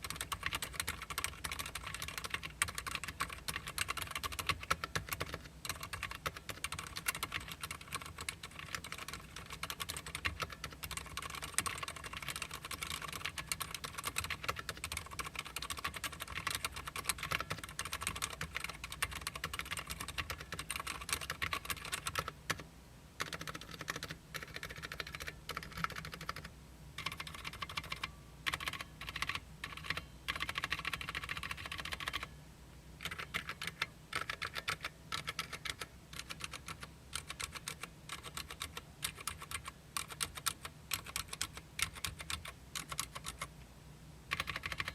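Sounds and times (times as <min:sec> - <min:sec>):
mechanical keyboard typing: 0:00.0 - 0:22.6, 0:23.2 - 0:32.3, 0:33.0 - 0:43.5, 0:44.3 - 0:44.9.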